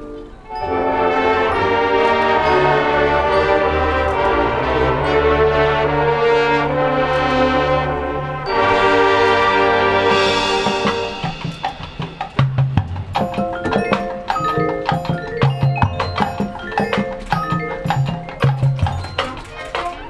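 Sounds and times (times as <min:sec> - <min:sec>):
ringing mallet-keyboard notes: 0:00.0 - 0:05.8, 0:08.3 - 0:20.0
brass band chord: 0:00.5 - 0:12.7
rapid sharp percussion clicks: 0:09.4 - 0:20.0.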